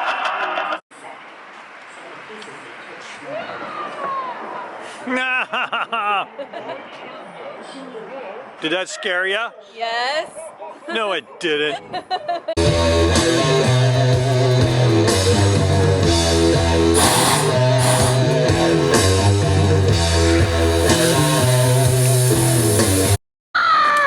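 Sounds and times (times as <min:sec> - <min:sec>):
loud rock music: 0:12.6 - 0:23.2.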